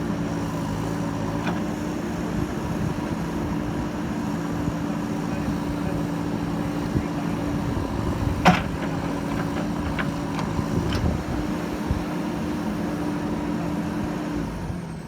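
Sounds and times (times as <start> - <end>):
diesel engine running: 0.0 - 15.0
light knocks: 8.3 - 11.1.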